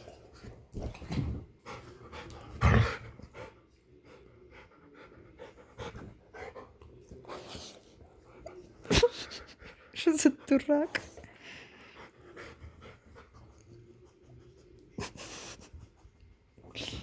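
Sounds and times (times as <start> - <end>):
dogs panting: 11.4 - 14.4.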